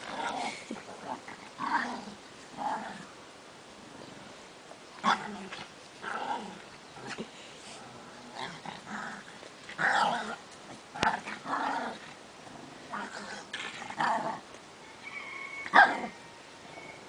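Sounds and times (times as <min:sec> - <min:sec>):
dog growling: 0:00.0 - 0:03.1, 0:05.0 - 0:14.4.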